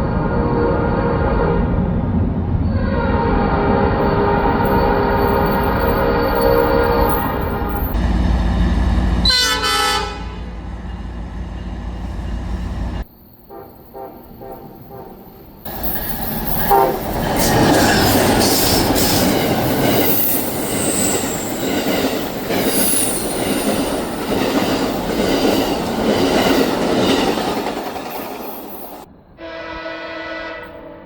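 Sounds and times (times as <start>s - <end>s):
train wheels rushing on rail: 1.6s - 29.1s
clickety-clack over rail joints: 4.4s - 9.4s, 15.6s - 29.1s
high wheel squeals: 15.4s - 24.2s.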